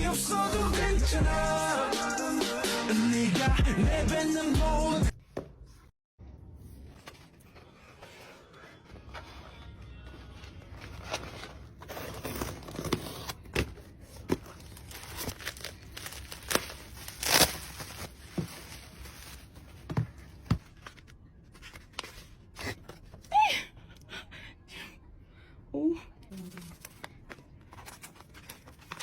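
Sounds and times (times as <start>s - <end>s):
plastic and paper tearing and crinkling: 14.1s - 19.7s.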